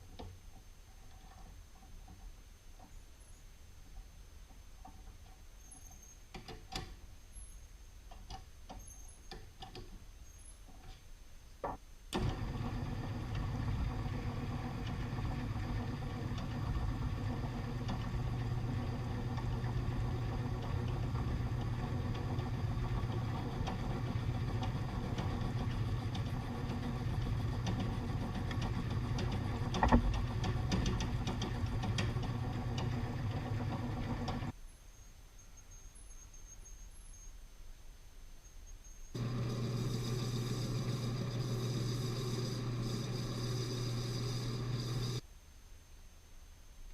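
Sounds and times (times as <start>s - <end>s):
lathe motor humming: 12.2s - 34.5s, 39.2s - 45.2s.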